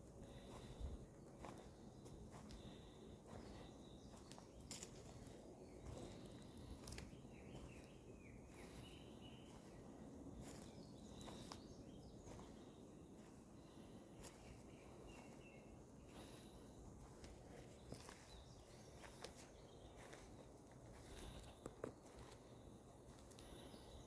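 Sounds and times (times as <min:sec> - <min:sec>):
distant bird chirps: 0:00.0 - 0:24.0.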